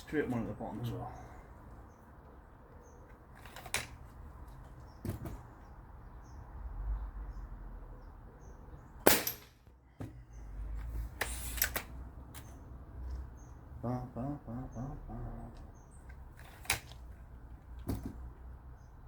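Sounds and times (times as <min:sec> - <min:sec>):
air rifle shots: 0:09.0 - 0:09.6
pellets striking targets: 0:09.0 - 0:09.7.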